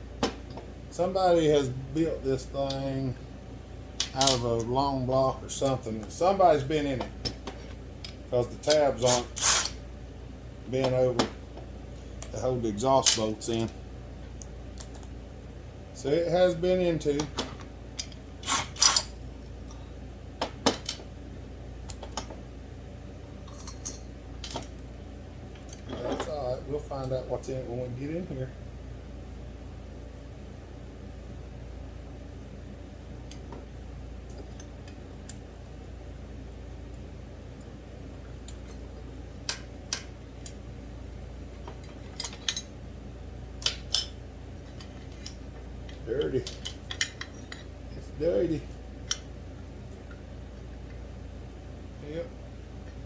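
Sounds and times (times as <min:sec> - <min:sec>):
steady low hum: 0:00.0 - 0:53.0
metal tools clicking and tapping: 0:41.6 - 0:42.7, 0:43.6 - 0:47.7.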